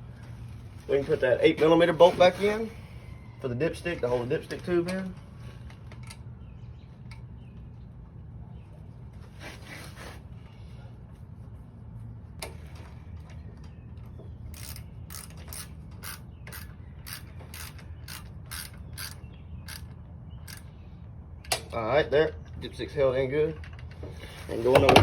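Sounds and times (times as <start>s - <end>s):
hand ratchet clicking: 14.5s - 20.7s.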